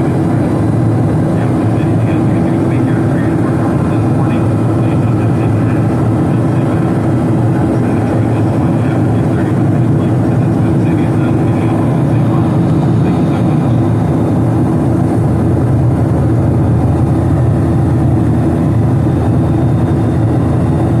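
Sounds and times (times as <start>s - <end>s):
jet engines roaring in cabin: 0.0s - 21.0s.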